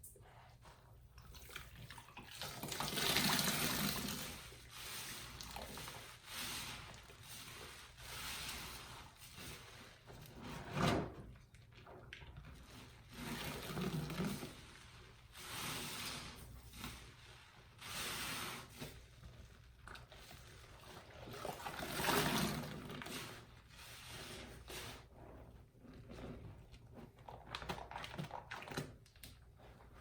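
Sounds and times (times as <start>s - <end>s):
wet sponge squelching: 0.5s - 10.7s, 11.4s - 30.0s
water pouring: 1.2s - 10.4s, 11.8s - 25.0s.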